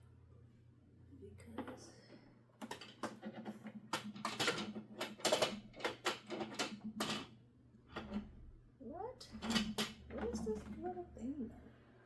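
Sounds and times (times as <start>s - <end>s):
hard plastic clicking and clattering: 2.6s - 7.3s.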